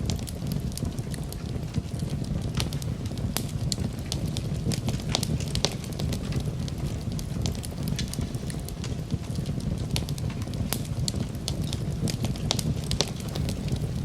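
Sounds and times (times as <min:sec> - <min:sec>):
low rumble of flames: 0:00.0 - 0:14.0
wood crackling and popping: 0:00.0 - 0:14.0.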